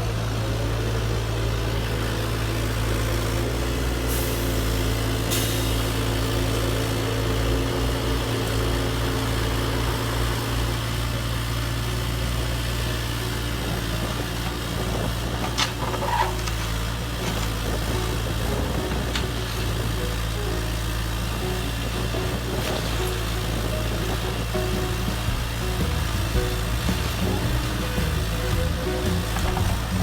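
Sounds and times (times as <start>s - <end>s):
machine hum: 16.4s - 30.0s.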